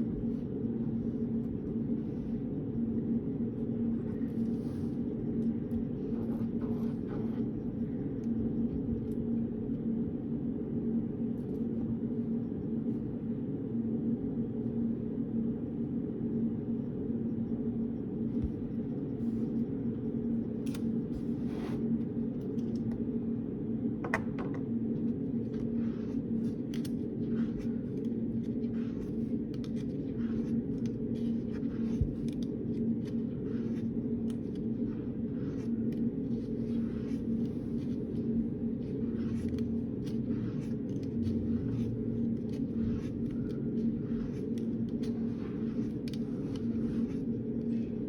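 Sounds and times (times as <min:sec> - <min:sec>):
low room hum: 0:00.0 - 0:48.0
pen writing on paper: 0:04.0 - 0:07.9, 0:25.5 - 0:48.0.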